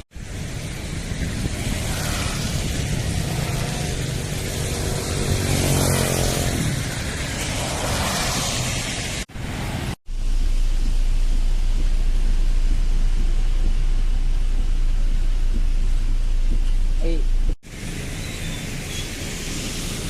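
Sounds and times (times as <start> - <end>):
road traffic noise: 0.0 - 20.0
vehicle engine passing: 0.4 - 10.0.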